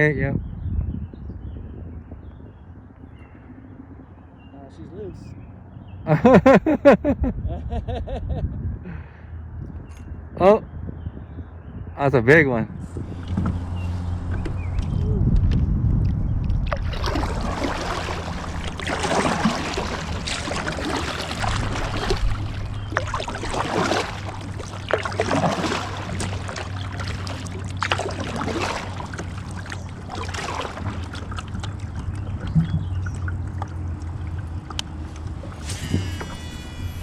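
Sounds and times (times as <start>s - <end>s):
steady low hum: 12.2s - 37.0s
paddle strokes splashing in water: 16.5s - 36.4s.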